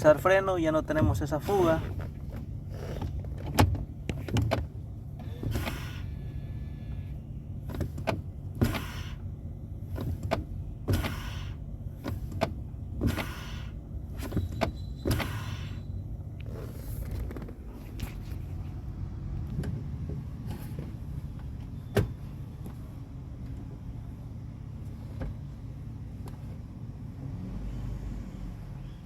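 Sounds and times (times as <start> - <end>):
car engine idling: 0.0 - 27.4
brake pedal clicks: 0.9 - 6.2, 6.9 - 24.2, 24.8 - 26.7
brake booster hiss: 5.2 - 8.0, 8.6 - 10.2, 10.8 - 14.4, 15.0 - 17.0.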